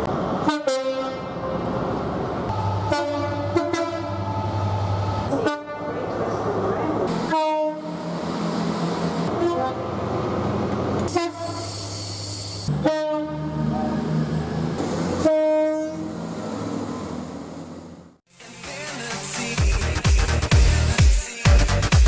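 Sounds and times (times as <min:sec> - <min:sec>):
train running: 0:00.0 - 0:18.2
train horn blasts: 0:00.4 - 0:01.4, 0:02.5 - 0:04.4, 0:05.3 - 0:06.0, 0:07.1 - 0:08.1, 0:09.3 - 0:09.8, 0:11.1 - 0:11.9, 0:12.7 - 0:13.6, 0:15.2 - 0:16.2.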